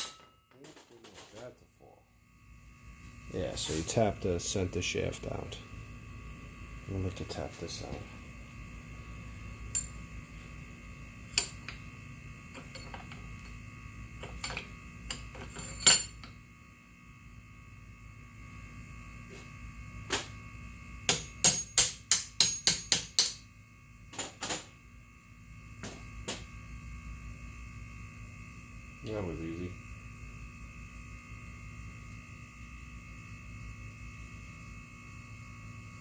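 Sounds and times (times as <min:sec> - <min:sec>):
hammer striking metal: 0:00.0 - 0:00.6, 0:21.1 - 0:23.4
steady hum: 0:00.0 - 0:36.0.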